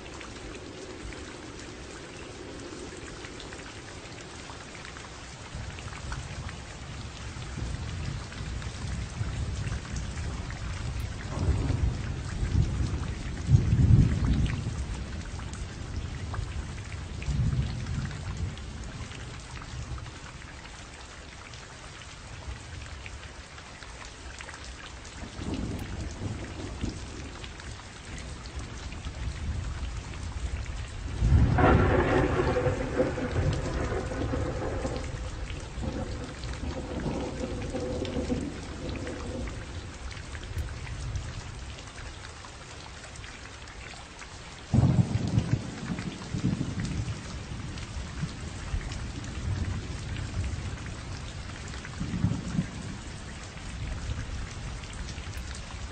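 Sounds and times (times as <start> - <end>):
steady rainfall: 0.0 - 55.9
rolling thunder: 5.5 - 20.1, 25.2 - 41.8, 44.7 - 53.1.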